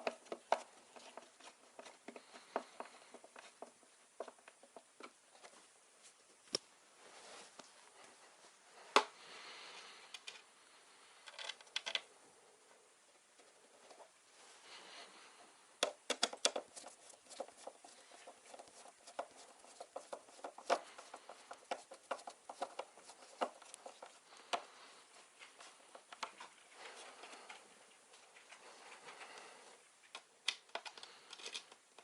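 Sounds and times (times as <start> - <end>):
small clicks and taps of parts: 0.0 - 5.6, 10.1 - 10.5, 11.2 - 12.1, 15.8 - 24.7, 25.4 - 29.4, 30.1 - 32.0.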